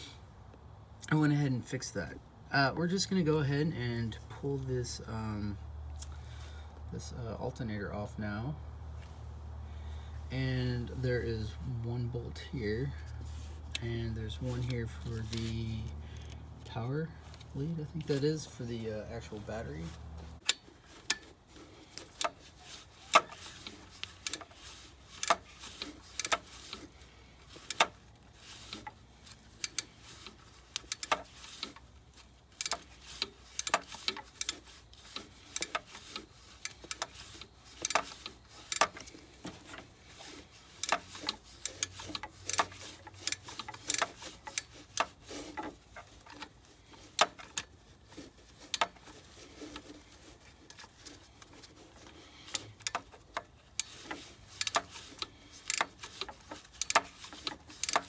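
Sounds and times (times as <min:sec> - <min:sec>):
ratchet wrench clicking on metal: 0:23.1 - 0:26.8, 0:29.6 - 0:31.8, 0:32.6 - 0:39.1, 0:40.7 - 0:45.2, 0:53.8 - 0:58.0.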